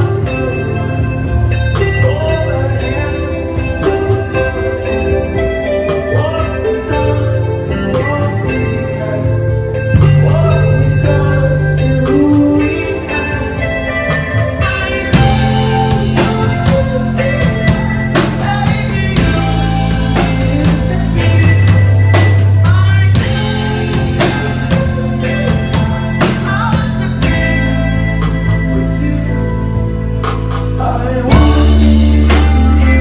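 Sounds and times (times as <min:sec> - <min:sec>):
electric guitars: 0:00.0 - 0:33.0
low held bass notes: 0:00.0 - 0:33.0
drum kit hitting: 0:10.0 - 0:13.5, 0:14.1 - 0:28.8.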